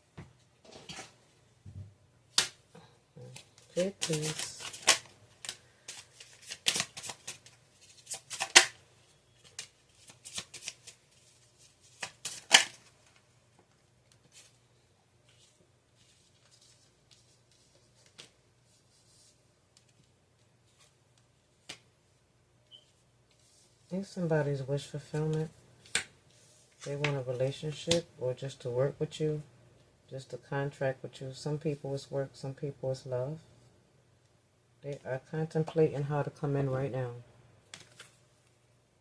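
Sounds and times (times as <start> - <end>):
cards being shuffled: 3.2 - 8.8, 9.4 - 13.2, 37.7 - 38.2.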